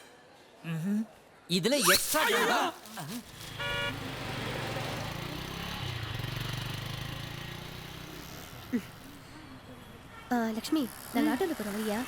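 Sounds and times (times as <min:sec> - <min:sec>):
auto-rickshaw engine idling: 0:03.3 - 0:09.7.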